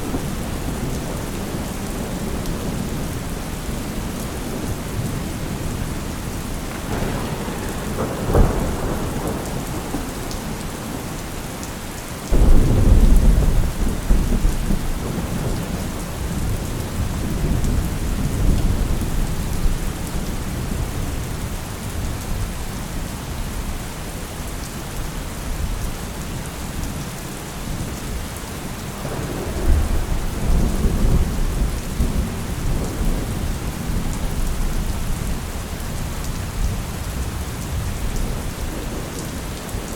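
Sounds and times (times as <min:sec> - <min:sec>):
rolling thunder rumble: 0:00.0 - 0:22.4, 0:28.8 - 0:39.9
steady rain: 0:00.0 - 0:39.9
thunder crack: 0:04.6 - 0:11.4, 0:12.3 - 0:18.9, 0:29.0 - 0:34.4.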